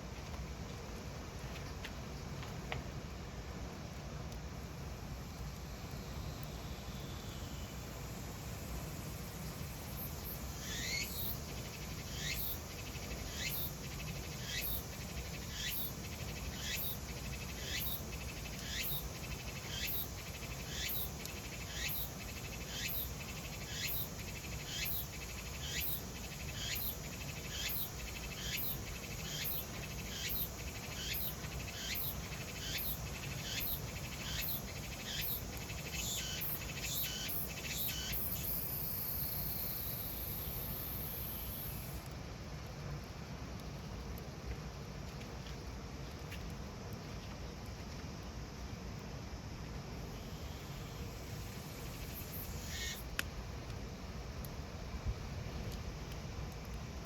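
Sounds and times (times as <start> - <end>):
cicada singing: 6.0 - 42.0, 50.0 - 53.2.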